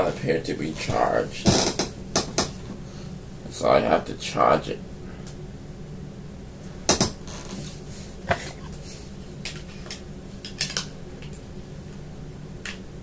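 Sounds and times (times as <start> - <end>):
low steady hum: 0.0 - 13.0
sharp clicks and knocks: 6.9 - 7.2.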